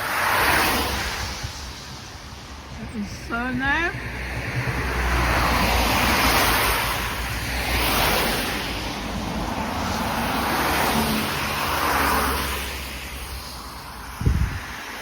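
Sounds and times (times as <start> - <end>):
low traffic rumble: 0.0 - 15.0
vehicles passing: 0.0 - 15.0.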